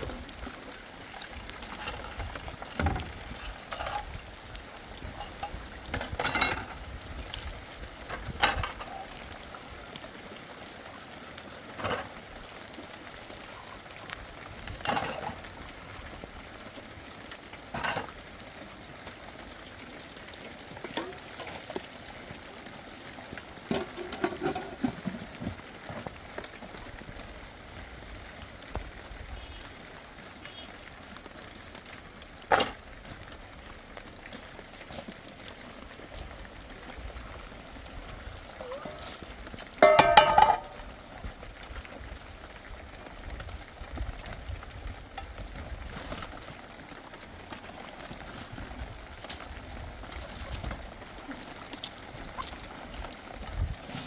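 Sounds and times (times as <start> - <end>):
rain falling: 0.0 - 54.0
knocks and clatters: 39.8 - 40.8.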